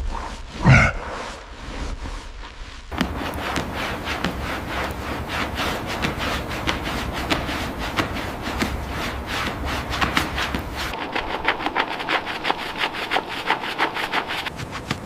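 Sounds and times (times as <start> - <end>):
low rumble: 0.0 - 3.2
rubbing strokes on a surface: 0.0 - 15.0.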